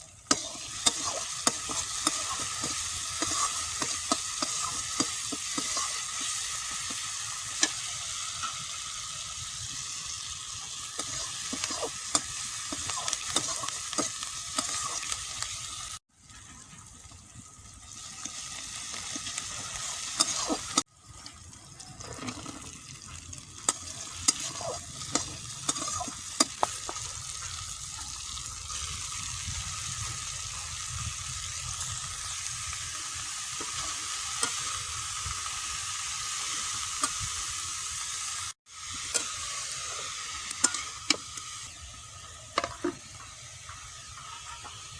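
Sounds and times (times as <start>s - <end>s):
food sizzling in a pan: 0.0s - 44.9s
spatula scraping a pan: 0.3s - 8.8s, 10.6s - 15.2s, 19.0s - 20.9s, 23.6s - 27.6s, 42.6s - 44.9s.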